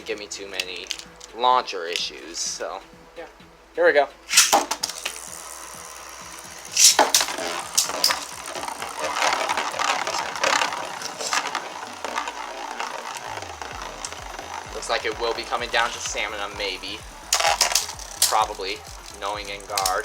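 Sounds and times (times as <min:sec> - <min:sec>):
spinning tops rattling: 0:00.0 - 0:02.8, 0:04.2 - 0:20.0
spinning tops whirring: 0:00.0 - 0:03.4, 0:04.2 - 0:20.0
spinning tops clashing: 0:00.4 - 0:02.5, 0:04.2 - 0:20.0
spinning top launcher rip: 0:04.2 - 0:20.0.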